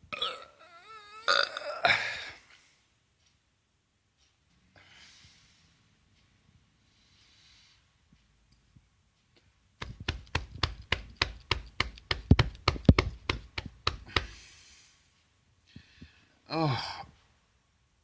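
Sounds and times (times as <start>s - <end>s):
rapid sharp knocks: 9.8s - 14.4s.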